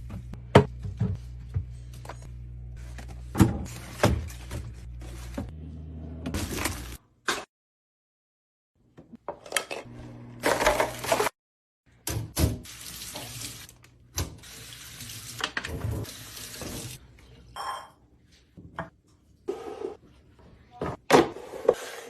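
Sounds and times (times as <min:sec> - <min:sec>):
water running from a tap: 0:12.4 - 0:17.0.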